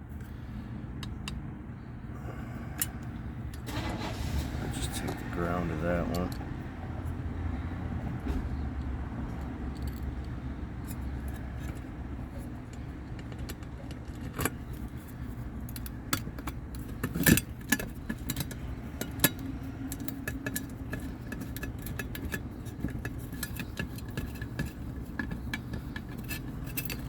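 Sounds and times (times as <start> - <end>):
steady low hum: 0.0 - 27.0
metal tools clinking: 2.8 - 6.5, 9.4 - 27.0.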